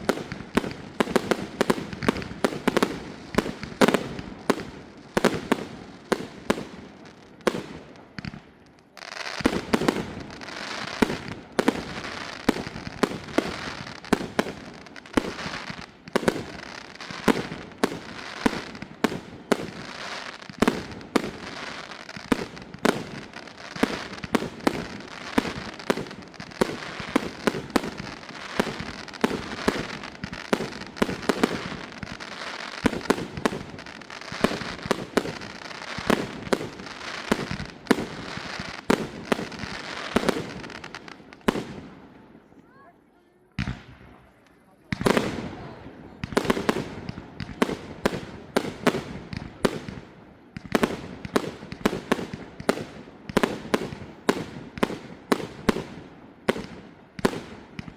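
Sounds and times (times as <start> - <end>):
fireworks crackle: 0.0 - 42.9.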